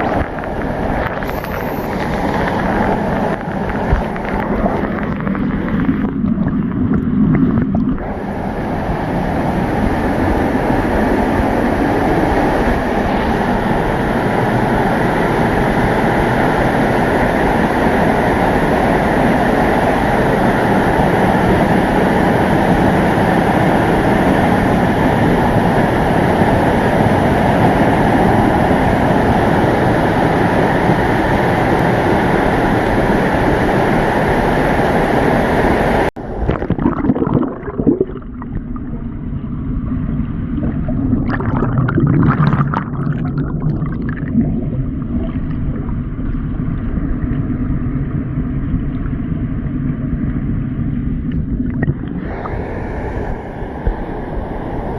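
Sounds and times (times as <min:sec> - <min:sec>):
waterfall roaring: 0:00.0 - 0:36.1
water gurgling and sloshing: 0:00.0 - 0:54.9.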